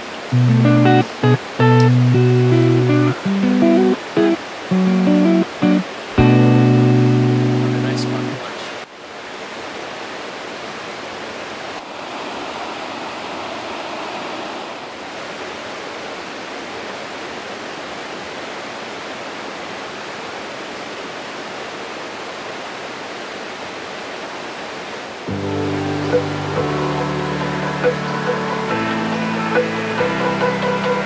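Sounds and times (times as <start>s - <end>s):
creek water rushing over rocks: 0.0s - 31.0s.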